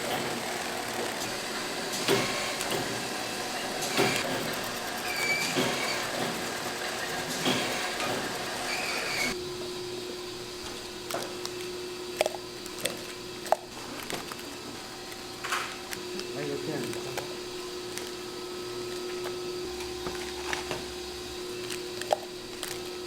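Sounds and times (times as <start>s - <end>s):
processing machinery running: 0.0s - 23.0s
steady hum: 0.0s - 23.0s.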